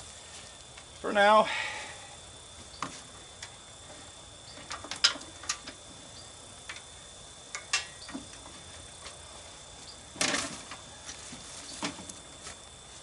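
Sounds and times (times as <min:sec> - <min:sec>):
tools and parts clicking and knocking: 0:04.6 - 0:05.8.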